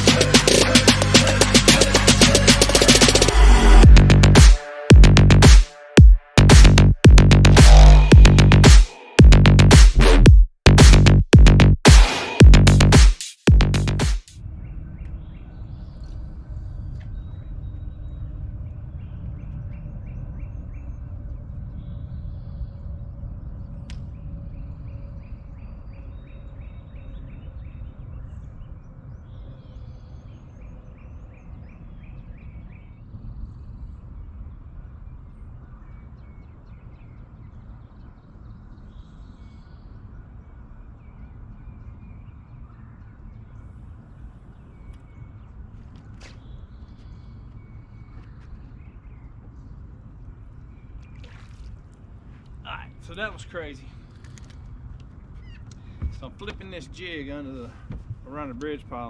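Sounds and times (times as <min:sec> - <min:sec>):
steady low rumble: 0:00.0 - 0:29.2
birds trilling: 0:35.0 - 0:59.0.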